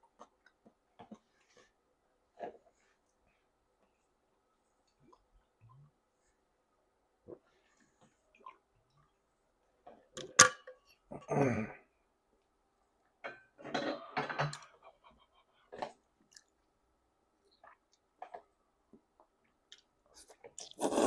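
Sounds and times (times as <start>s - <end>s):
slurping and chewing noodles: 20.2s - 21.0s.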